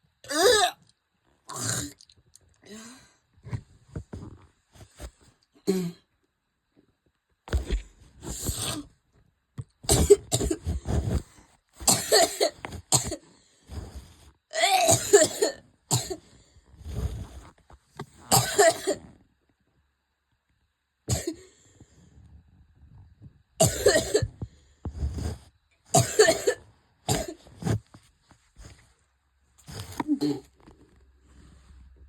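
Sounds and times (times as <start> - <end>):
person coughing: 9.9 - 11.1, 11.8 - 13.2, 14.6 - 16.2, 18.3 - 19.1, 21.1 - 21.5, 23.6 - 24.4, 26.0 - 27.5, 29.9 - 30.6.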